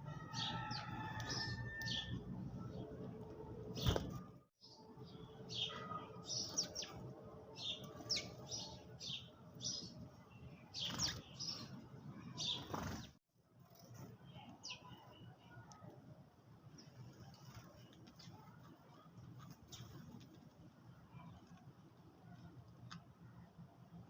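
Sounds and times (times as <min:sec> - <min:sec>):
sparrows chirping: 0:00.0 - 0:13.2, 0:13.9 - 0:15.6, 0:16.7 - 0:20.2.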